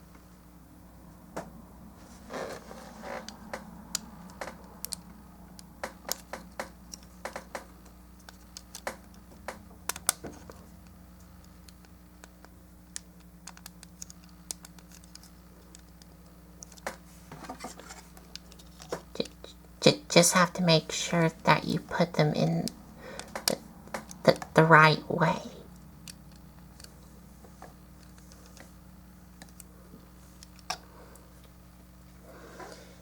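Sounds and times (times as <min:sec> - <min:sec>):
faint steady hum: 0:00.0 - 0:33.0
plastic parts clicking and snapping: 0:03.2 - 0:19.4, 0:22.6 - 0:24.5, 0:29.4 - 0:29.7.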